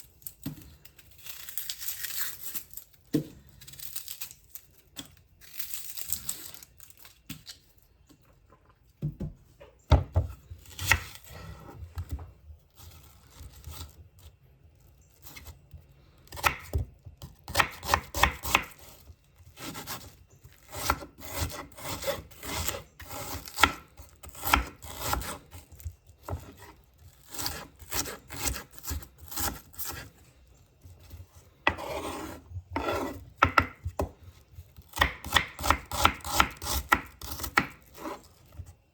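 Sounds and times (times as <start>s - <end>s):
knife scraping cutting board: 10.6s - 14.3s, 17.5s - 38.7s
knife chopping on wooden board: 16.3s - 18.9s, 20.7s - 25.4s, 27.3s - 30.1s, 31.6s - 34.2s, 34.8s - 38.2s.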